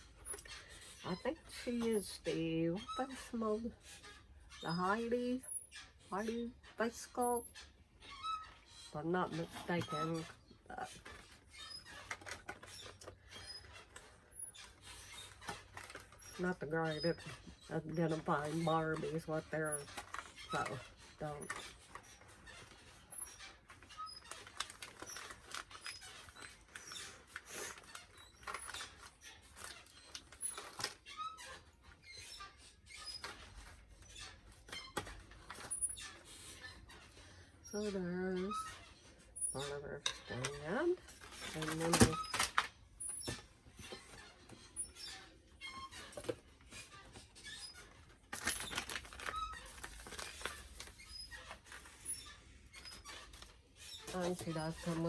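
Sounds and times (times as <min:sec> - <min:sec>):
plastic squeaks: 0:00.0 - 0:55.0
plastic crinkling and clicking: 0:09.5 - 0:16.6, 0:18.9 - 0:32.0, 0:40.0 - 0:55.0.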